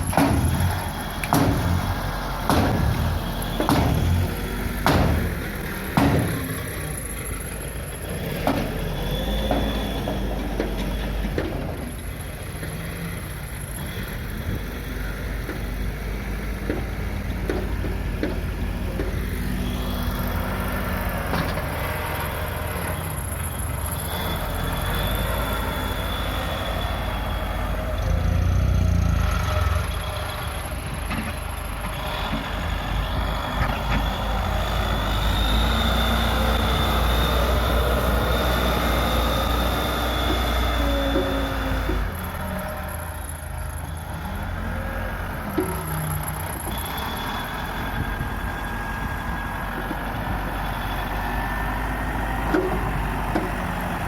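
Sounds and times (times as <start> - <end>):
metallic knocks: 0.0 - 6.7
diesel engine running under load: 0.0 - 54.0.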